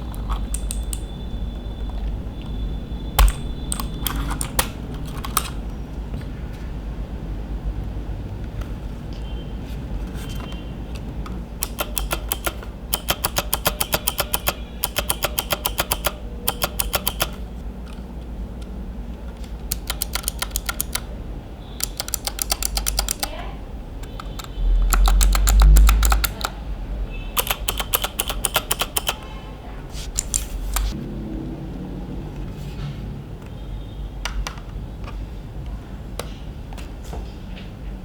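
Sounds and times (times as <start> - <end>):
mechanical keyboard key clicks: 0.0 - 1.2, 3.2 - 5.7, 11.0 - 17.4, 19.5 - 21.1, 21.8 - 23.4, 24.0 - 26.6, 27.4 - 29.3, 30.0 - 31.0.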